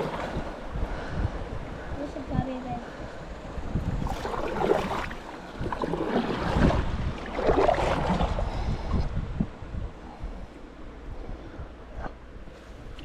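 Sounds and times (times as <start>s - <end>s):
water splashing around kayak: 0.0s - 9.5s
wind rumbling on microphone: 0.0s - 13.0s.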